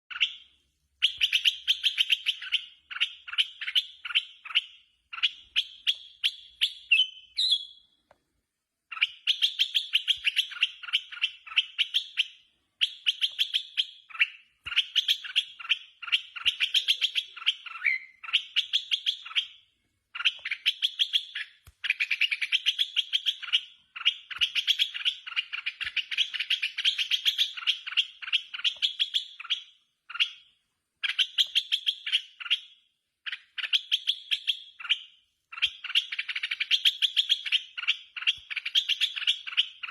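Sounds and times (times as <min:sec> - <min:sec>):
bird shrill rapid chattering: 0:08.9 - 0:19.5.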